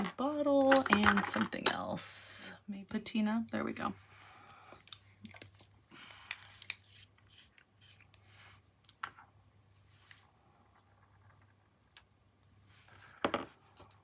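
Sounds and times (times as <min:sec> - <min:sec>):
small items clicking and tapping: 0:00.0 - 0:02.0.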